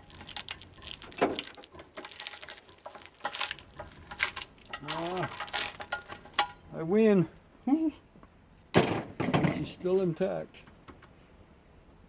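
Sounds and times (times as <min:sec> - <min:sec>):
plastic and metal parts clinking: 0:00.0 - 0:06.6.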